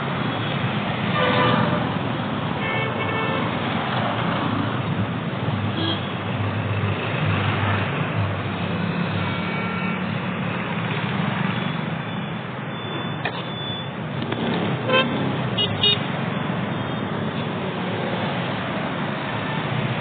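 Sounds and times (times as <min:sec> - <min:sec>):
road traffic noise: 0:00.0 - 0:20.0.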